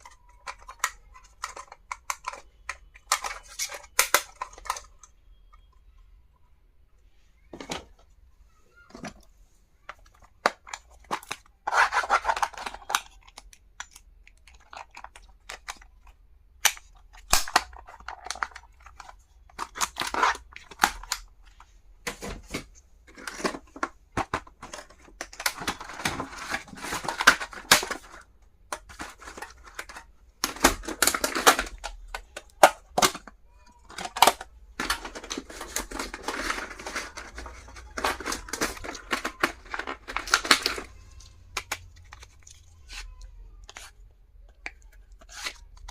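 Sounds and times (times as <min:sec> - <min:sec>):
packaging rustling and tearing: 0:11.0 - 0:15.9, 0:22.2 - 0:33.2, 0:33.9 - 0:44.0.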